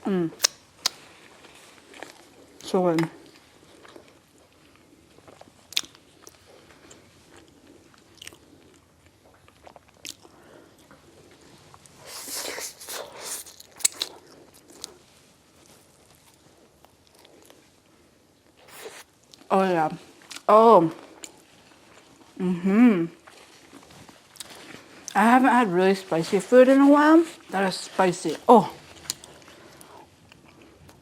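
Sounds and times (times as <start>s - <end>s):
crunchy bites of food: 0.4s - 1.1s, 12.0s - 15.0s
wet chewing: 0.4s - 17.7s, 18.6s - 19.5s, 23.2s - 25.2s, 27.2s - 31.0s.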